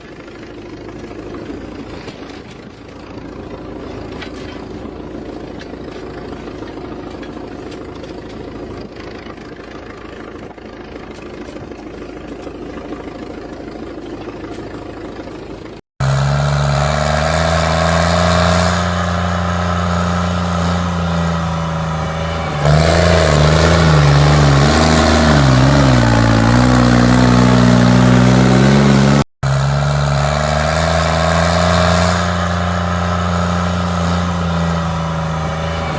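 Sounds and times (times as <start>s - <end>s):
backhoe diesel engine running: 0.0s - 35.9s.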